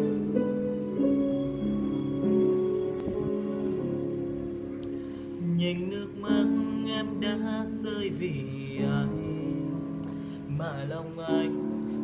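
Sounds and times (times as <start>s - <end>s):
sliding wordless melody: 0.0s - 12.0s.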